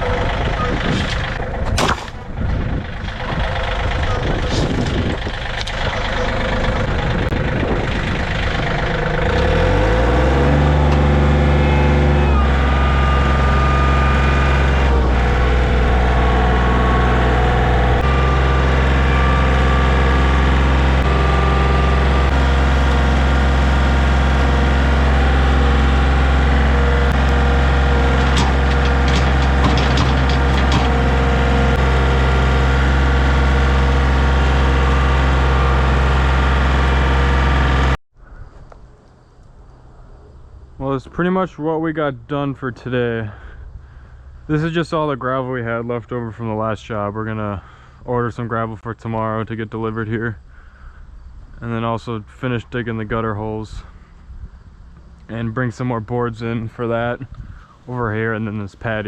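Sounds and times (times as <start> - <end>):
tractor engine revving: 0.0 - 38.0.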